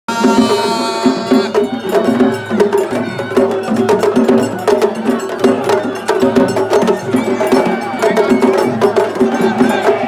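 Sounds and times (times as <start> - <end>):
drums: 0.1 - 10.0
sharp clacking percussion: 0.1 - 10.0.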